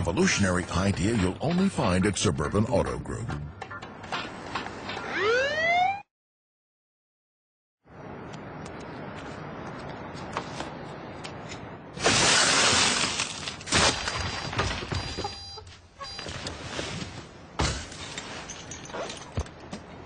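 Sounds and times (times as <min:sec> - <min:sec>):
steady background noise: 0:07.9 - 0:20.0
loud crash: 0:12.0 - 0:14.8.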